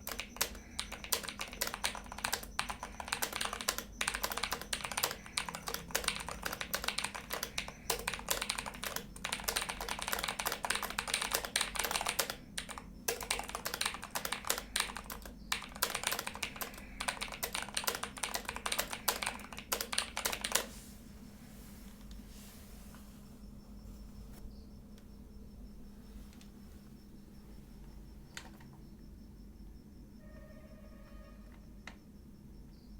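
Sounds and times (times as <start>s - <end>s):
mechanical keyboard typing: 0.0s - 20.7s.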